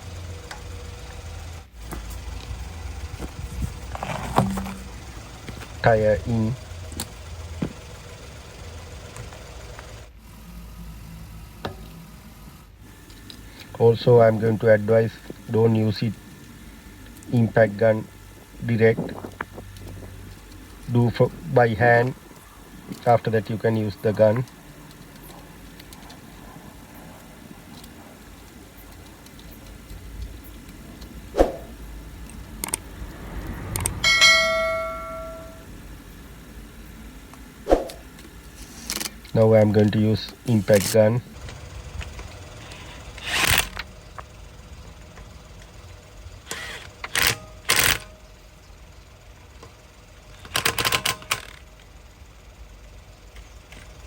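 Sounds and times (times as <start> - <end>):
low steady hum: 0.0 - 50.5
car wheel knocks and clicks: 1.8 - 9.9
metal tools clinking: 3.5 - 6.6, 34.0 - 35.7
struck metal ringing: 4.3 - 5.2, 34.0 - 35.7.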